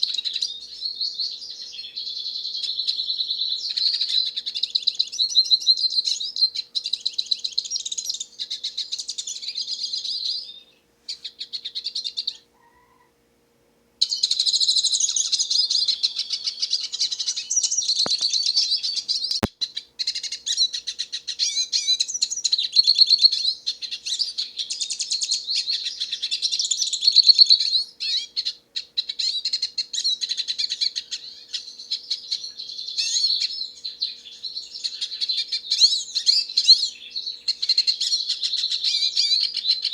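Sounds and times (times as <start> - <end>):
bird twittering and warbling song: 0.0 - 12.5, 14.0 - 39.9
sharp click: 18.0 - 18.4, 19.2 - 19.5.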